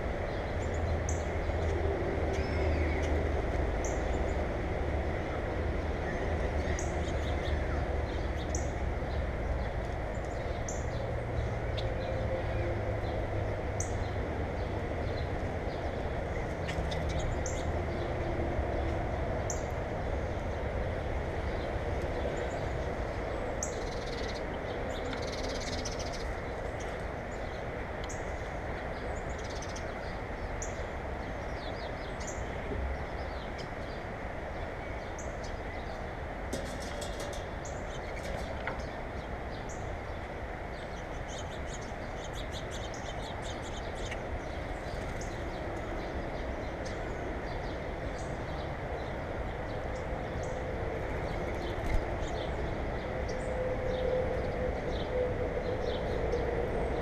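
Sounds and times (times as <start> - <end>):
birds chirping: 21.5 - 57.0.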